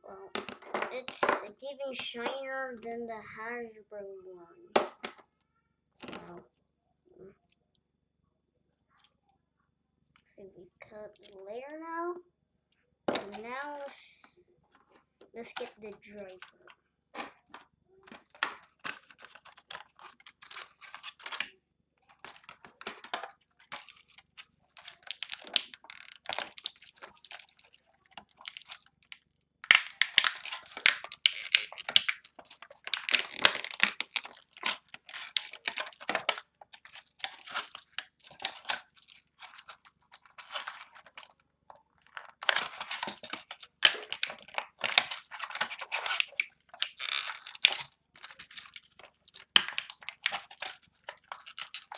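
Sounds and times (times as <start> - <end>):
plastic crinkling and rustling: 14.7 - 51.9
sharp plastic clicks: 28.2 - 36.5.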